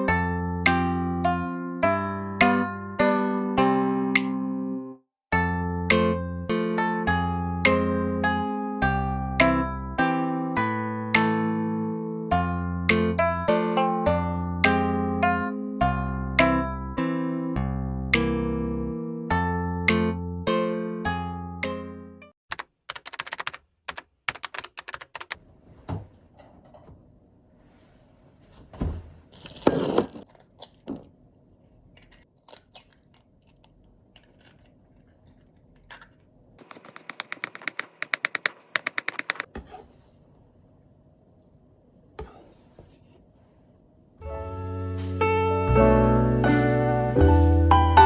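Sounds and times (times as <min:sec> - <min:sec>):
fast even taps: 0:36.6 - 0:39.5.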